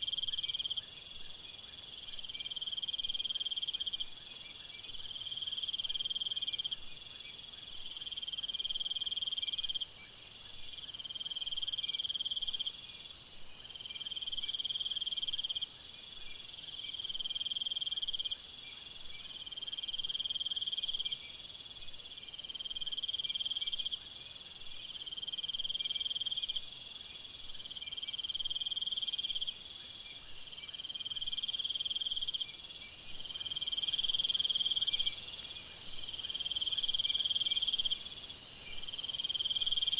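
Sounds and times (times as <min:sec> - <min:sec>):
insect chorus shrilling: 0:22.1 - 0:39.9.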